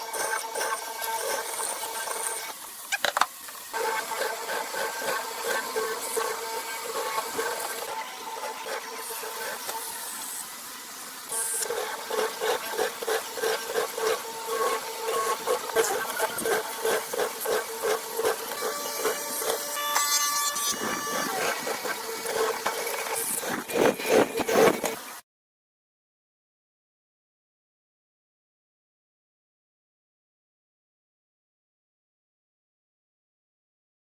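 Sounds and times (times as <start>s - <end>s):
woodworking tool humming: 0.0s - 25.2s.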